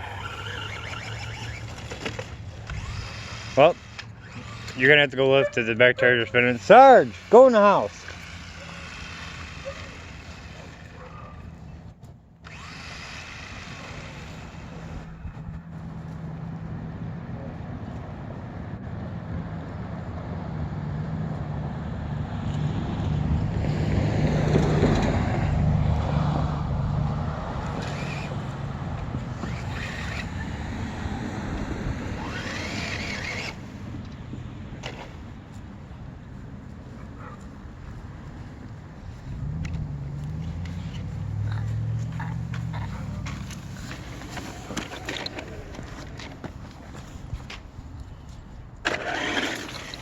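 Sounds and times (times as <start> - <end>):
electric motor whirring: 0.0 - 5.3, 6.4 - 11.6, 12.4 - 15.5, 27.6 - 33.9.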